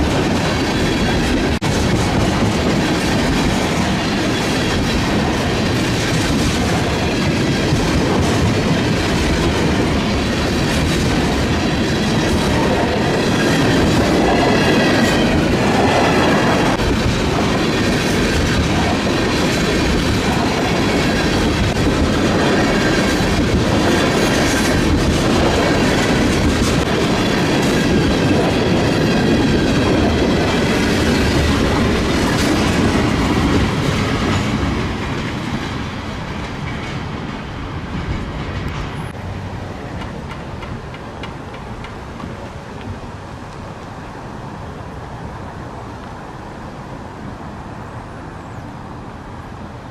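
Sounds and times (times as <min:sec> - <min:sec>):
train wheels clattering on rails: 0:00.0 - 0:39.2, 0:39.8 - 0:43.9.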